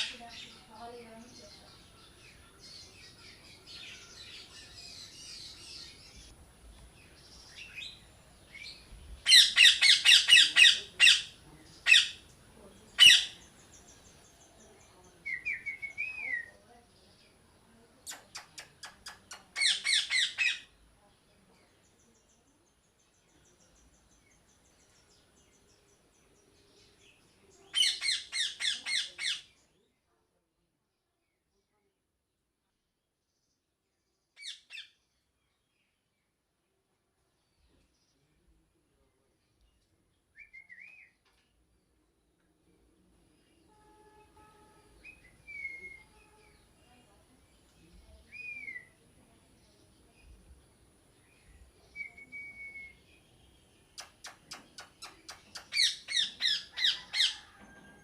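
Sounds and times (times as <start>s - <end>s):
faint birds chirping: 0.0s - 58.0s
parrot squawking: 9.3s - 11.3s, 13.0s - 13.3s, 19.6s - 20.6s.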